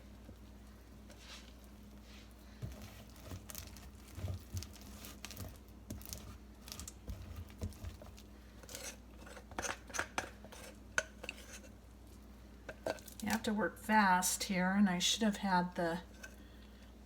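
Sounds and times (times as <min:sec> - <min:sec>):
utensil scraping candy in a dish: 0:00.4 - 0:13.5.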